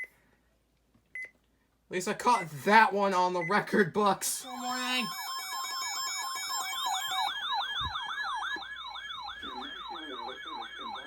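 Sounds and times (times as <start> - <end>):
electronic siren yelp: 4.4 - 11.0
high beeps: 4.4 - 11.0.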